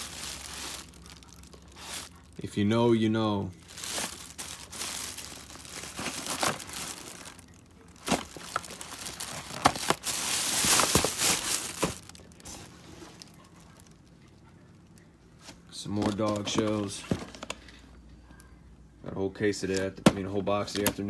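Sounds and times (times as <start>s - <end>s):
packaging crinkling and rustling: 0.0s - 2.4s, 3.6s - 14.3s, 15.9s - 17.8s.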